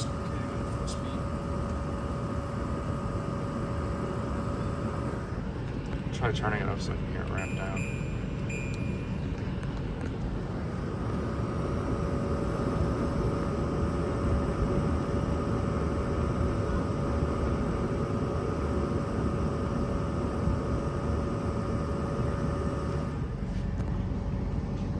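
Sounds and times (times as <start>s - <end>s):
air conditioner fan rushing hum: 0.0s - 24.9s
steady hum tone: 0.0s - 24.9s
short electronic beep: 7.4s - 9.2s.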